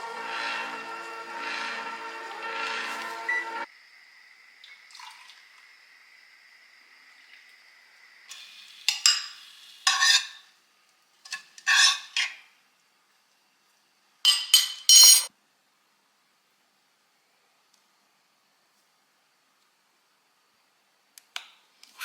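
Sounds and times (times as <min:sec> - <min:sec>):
utensils scraping and clinking dishes: 0:00.0 - 0:03.6, 0:08.9 - 0:10.4, 0:11.3 - 0:12.4.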